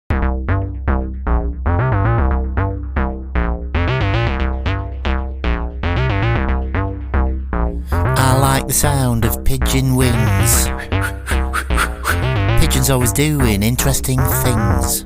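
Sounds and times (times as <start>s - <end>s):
steady bass: 0.1s - 15.0s.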